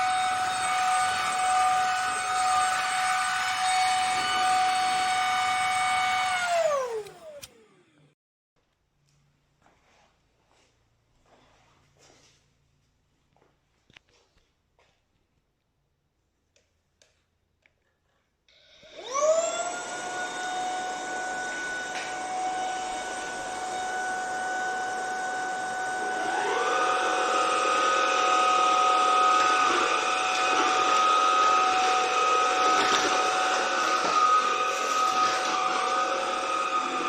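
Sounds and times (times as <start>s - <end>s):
vacuum cleaner motor whine: 0.0s - 8.1s, 18.6s - 37.0s.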